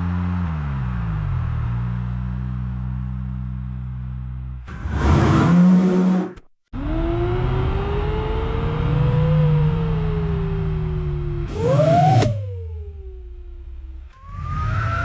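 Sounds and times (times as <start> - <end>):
car engine accelerating: 0.0 - 15.0
car engine revving: 4.7 - 15.0.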